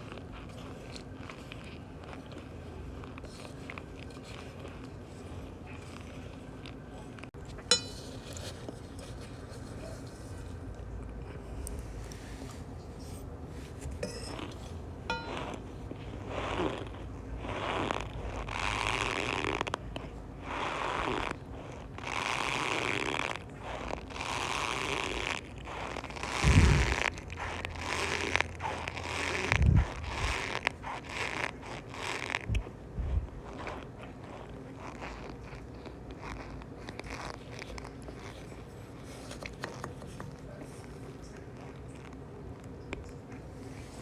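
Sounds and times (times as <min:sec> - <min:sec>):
cornstarch squeaky crunching creak: 0:15.4 - 0:43.1.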